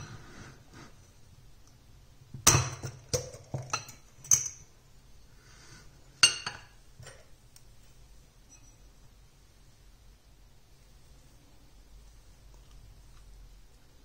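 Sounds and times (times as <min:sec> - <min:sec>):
dishes and utensils clinking: 0:02.5 - 0:04.6, 0:06.1 - 0:07.3, 0:08.4 - 0:08.9.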